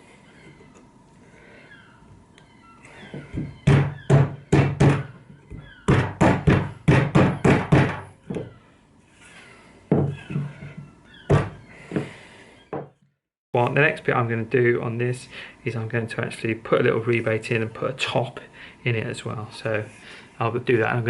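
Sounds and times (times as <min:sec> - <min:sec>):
sharp knocks on wood: 0:03.2 - 0:08.5.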